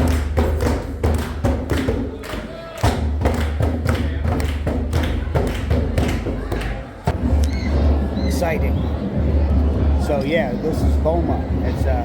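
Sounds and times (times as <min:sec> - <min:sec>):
drums playing a driving beat: 0:00.0 - 0:02.2, 0:02.8 - 0:08.8.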